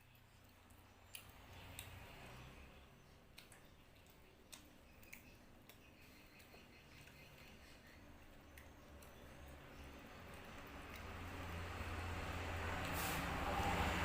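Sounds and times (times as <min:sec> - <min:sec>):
quiet chewing: 0:00.0 - 0:12.0
low background hum: 0:00.0 - 0:13.6
mouth and lip clicks: 0:00.1 - 0:02.4, 0:03.2 - 0:11.6.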